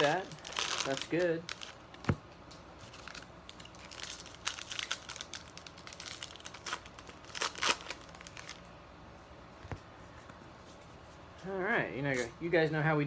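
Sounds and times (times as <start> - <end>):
plastic wrapper snap: 0.0 - 8.6
plastic wrappers crinkling and tearing: 0.0 - 8.7.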